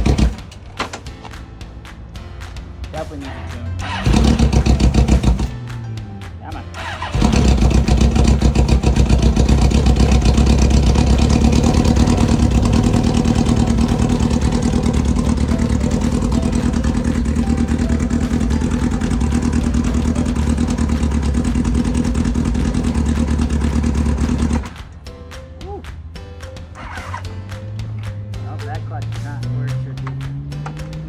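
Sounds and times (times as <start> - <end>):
motorcycle engine running: 0.0 - 0.6, 3.8 - 5.8, 6.8 - 24.9.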